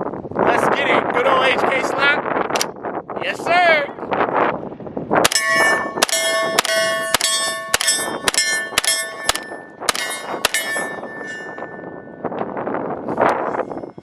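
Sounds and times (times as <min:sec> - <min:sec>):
carbine gunshots: 0:05.2 - 0:11.2
steel plate clanging and ringing: 0:05.3 - 0:12.4.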